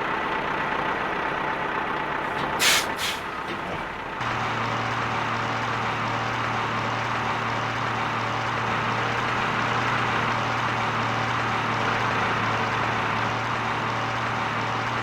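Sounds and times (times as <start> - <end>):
vehicle engine running: 3.8 - 15.0.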